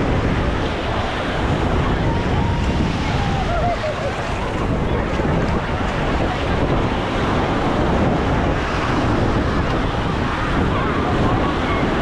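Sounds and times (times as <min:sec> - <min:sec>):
ocean surf breaking: 0:00.0 - 0:12.0
wind buffeting microphone: 0:00.0 - 0:12.0.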